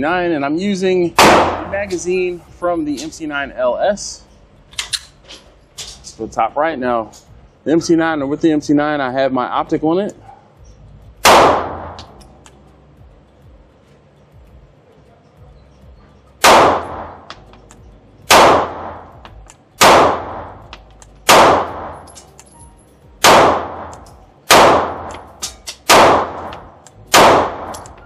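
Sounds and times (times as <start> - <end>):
pistol shots with echo: 1.2 - 1.8, 11.2 - 12.1, 16.4 - 17.3, 18.3 - 19.2, 19.8 - 22.2, 23.2 - 28.0.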